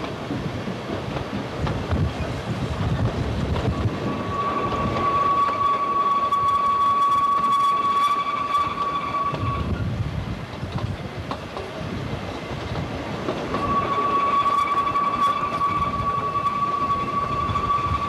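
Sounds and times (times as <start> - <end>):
train wheels rumbling on track: 0.0 - 18.0
high-pitched wheel squeal: 3.7 - 9.8, 13.5 - 18.0.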